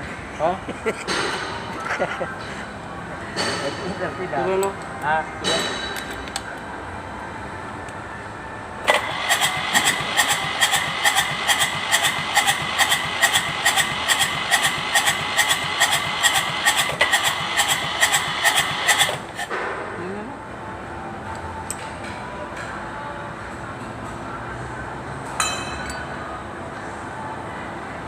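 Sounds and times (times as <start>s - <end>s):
diesel engine cranking on starter: 8.8s - 19.5s.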